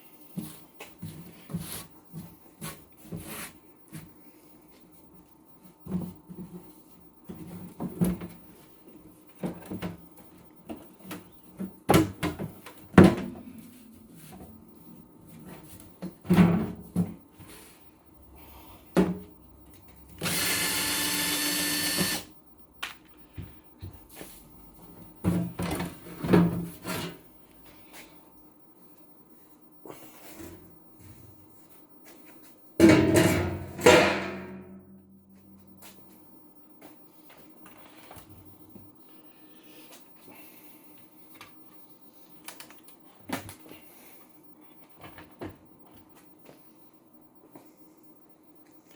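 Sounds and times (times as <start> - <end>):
power tool running: 20.2 - 22.3.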